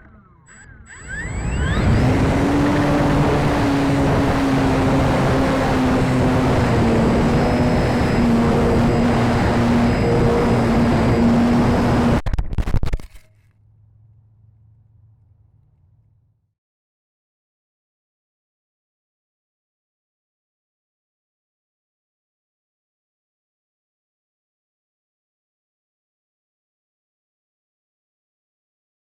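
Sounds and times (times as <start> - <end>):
model plane motor and propeller: 0.5 - 12.2
wind rush: 1.5 - 12.2.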